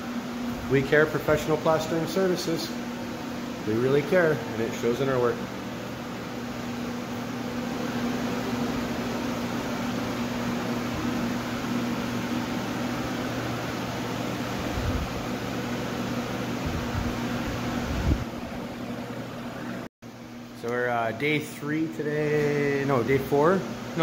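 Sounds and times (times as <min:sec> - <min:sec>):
fan humming with rushing air: 0:00.0 - 0:24.0.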